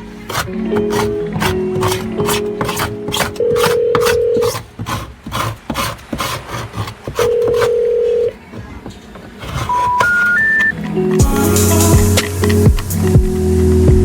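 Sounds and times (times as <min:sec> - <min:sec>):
clicking and rubbing noises: 0:00.0 - 0:11.3
washing machine electronic beeps: 0:09.6 - 0:11.4.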